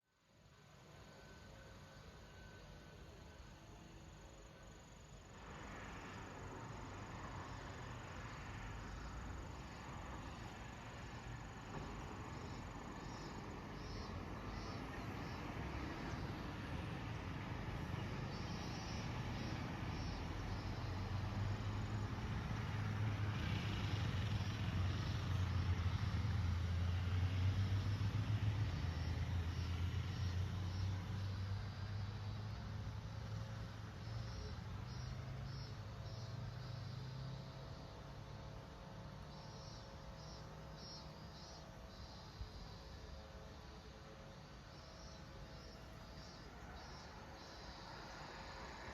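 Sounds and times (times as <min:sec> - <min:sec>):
insects chorus: 0:00.4 - 0:48.9
vehicle engine hum: 0:00.5 - 0:48.9.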